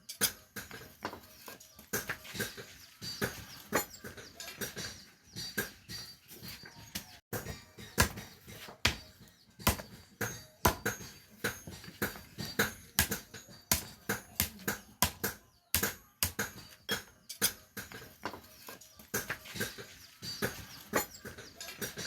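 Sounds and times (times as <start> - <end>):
hammer striking iron: 0.0 - 22.0.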